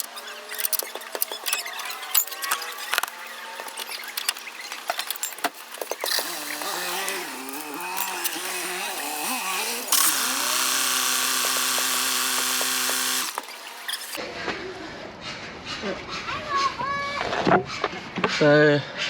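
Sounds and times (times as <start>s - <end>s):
power drill whirring: 5.6s - 14.2s.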